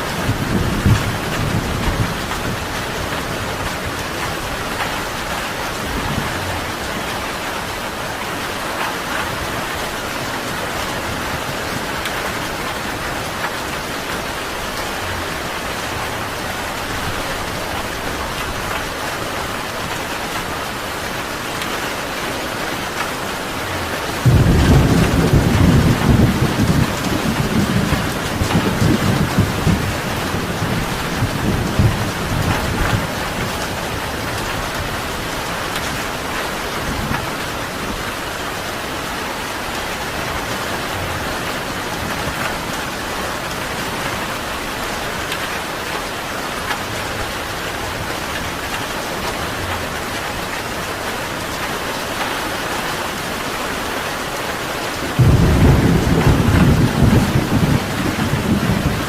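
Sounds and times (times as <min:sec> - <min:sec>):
thunder rumbling: 0:00.0 - 0:08.3, 0:22.9 - 0:38.0, 0:55.1 - 0:59.0
heavy rain falling: 0:00.0 - 0:59.0.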